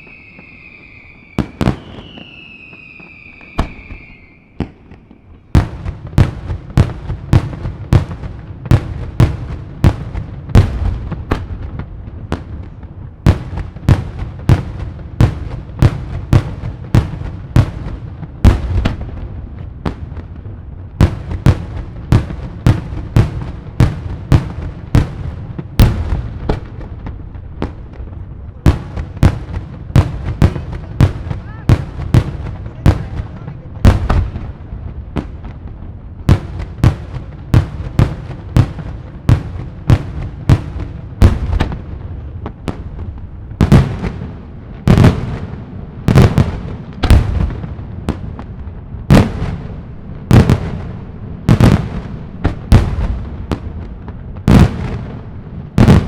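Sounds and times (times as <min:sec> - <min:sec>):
firework whistles: 0:00.0 - 0:05.6
firework bangs: 0:00.0 - 0:56.0.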